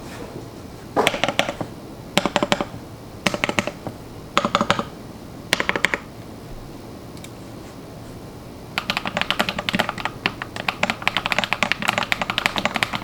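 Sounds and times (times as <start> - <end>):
mechanical keyboard typing: 1.0 - 4.9, 5.5 - 6.1, 8.8 - 13.0.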